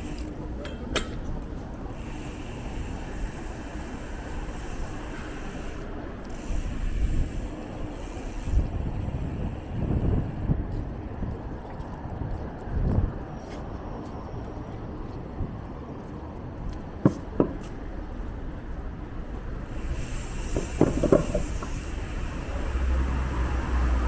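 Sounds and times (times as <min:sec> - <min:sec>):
road traffic rumble: 0:00.0 - 0:24.0.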